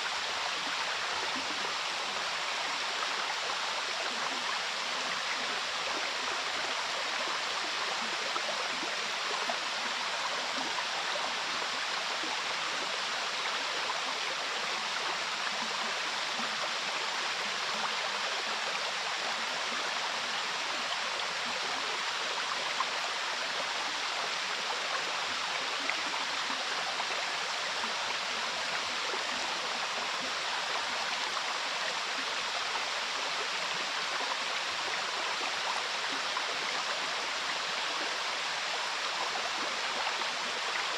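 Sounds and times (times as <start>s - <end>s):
waterfall: 0.0s - 40.9s.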